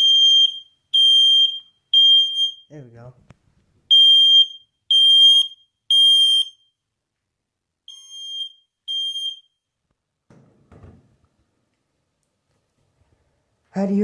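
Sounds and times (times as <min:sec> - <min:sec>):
smoke alarm beeping: 0:00.0 - 0:02.8, 0:03.9 - 0:06.8, 0:07.9 - 0:09.7.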